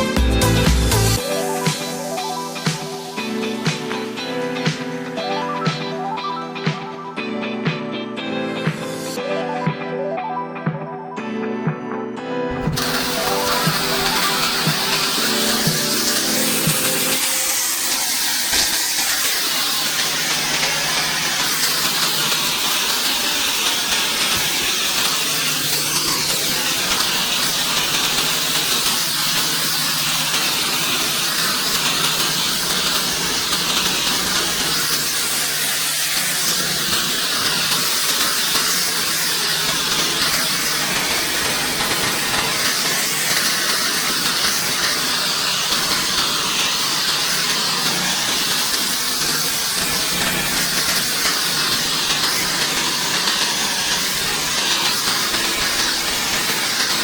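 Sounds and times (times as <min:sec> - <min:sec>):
pressure washer spraying concrete: 0:00.0 - 0:06.9, 0:12.5 - 0:57.0.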